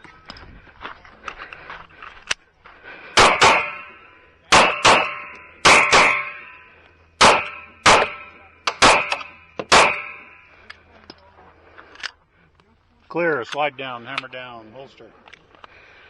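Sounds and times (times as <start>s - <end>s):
pistol shots: 3.2s - 6.5s, 7.2s - 10.3s.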